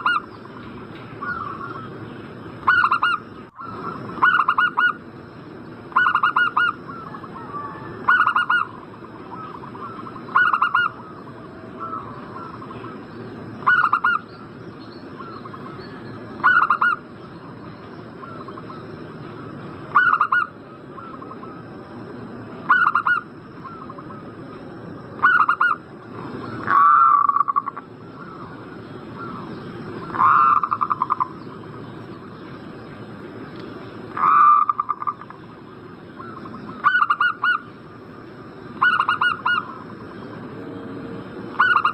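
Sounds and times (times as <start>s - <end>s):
faint high whine: 0.0s - 41.9s
dove cooing: 1.2s - 1.9s, 2.7s - 5.0s, 5.9s - 11.2s, 13.6s - 14.2s, 19.9s - 21.7s, 26.4s - 28.6s, 29.2s - 31.4s, 38.8s - 39.9s, 41.5s - 41.9s.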